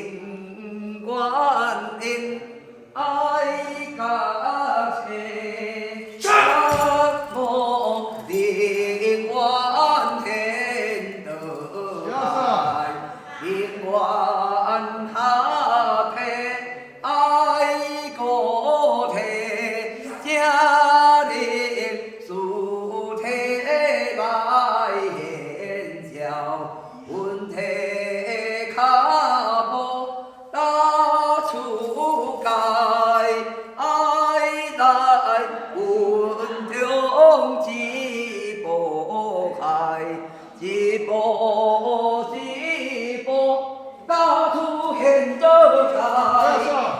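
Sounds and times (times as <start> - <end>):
breaths: 40.2 - 40.6.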